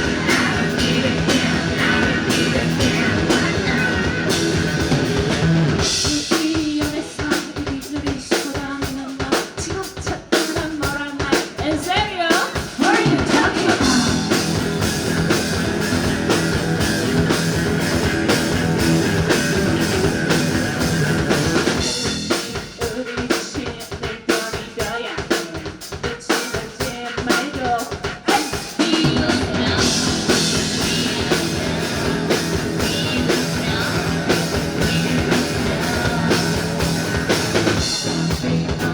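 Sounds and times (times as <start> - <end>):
rock band playing: 0.0 - 38.9
drum kit hits: 12.8 - 22.6, 29.0 - 38.9.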